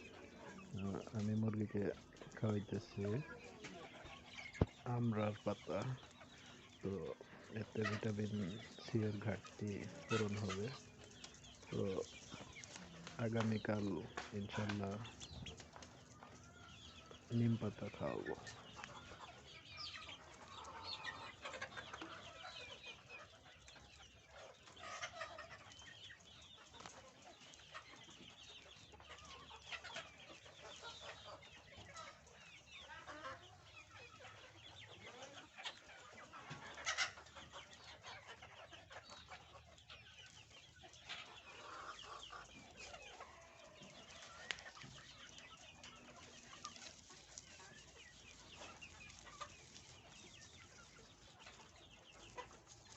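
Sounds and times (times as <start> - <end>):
chickens clucking and chirping: 0.0 - 52.9.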